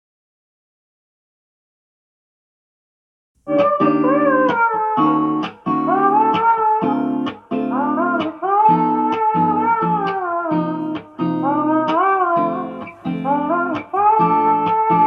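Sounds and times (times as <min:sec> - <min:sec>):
guitar plucked and strummed: 0:03.5 - 0:15.0.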